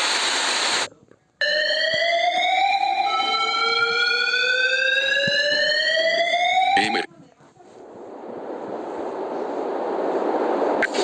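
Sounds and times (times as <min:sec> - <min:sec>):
harsh rising electronic alarm tones: 0:01.4 - 0:07.1.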